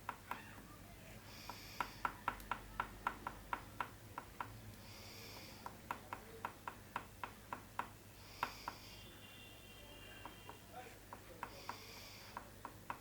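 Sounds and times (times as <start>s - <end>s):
oil pastel tapping on paper: 1.4s - 4.6s, 5.3s - 8.8s, 10.2s - 13.0s.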